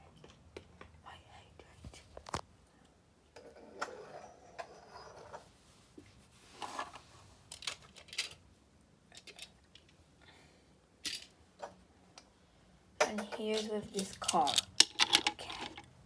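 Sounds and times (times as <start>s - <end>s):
small objects clicking: 13.4s - 15.9s.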